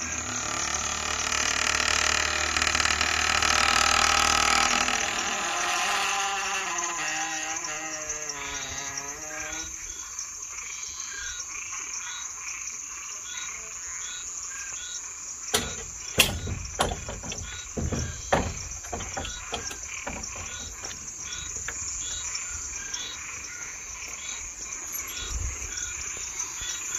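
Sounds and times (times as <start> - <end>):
wavering creak: 0.0 - 9.9, 15.5 - 25.9
crickets trilling: 0.0 - 26.9
short insect chirp: 3.8 - 26.9
gate latch clacking: 15.5 - 22.4.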